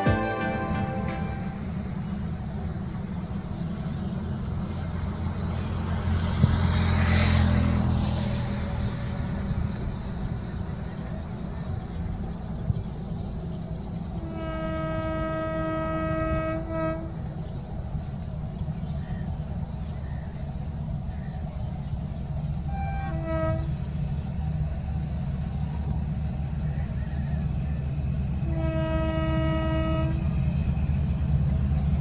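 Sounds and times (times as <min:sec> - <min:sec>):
train horn blast: 0:00.0 - 0:02.3, 0:14.1 - 0:17.5, 0:22.6 - 0:24.1, 0:28.4 - 0:30.5
train rumbling: 0:00.0 - 0:32.0.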